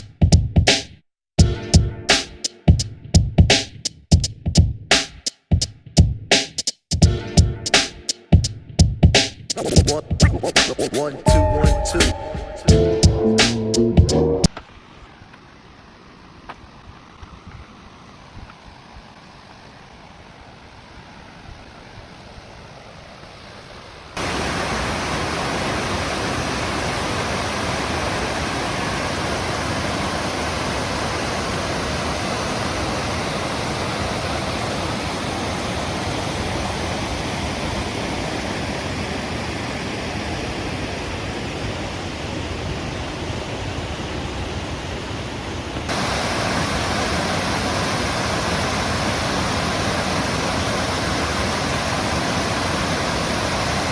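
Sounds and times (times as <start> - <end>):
waterfall rushing: 23.6 - 53.9.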